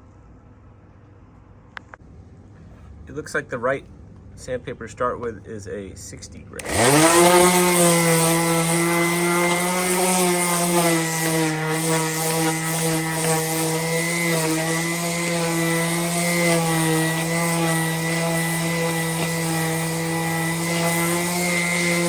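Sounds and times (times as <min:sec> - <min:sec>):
palm sander running: 0:06.6 - 0:22.0.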